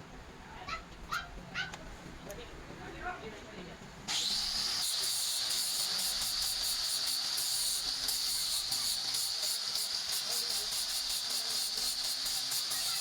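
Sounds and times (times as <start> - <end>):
gas jet hissing: 4.1 - 13.0.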